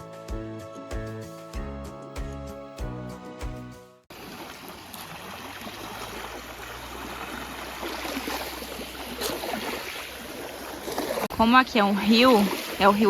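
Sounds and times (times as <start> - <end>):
background music: 0.0 - 4.1
river water on stony shore: 4.1 - 13.0.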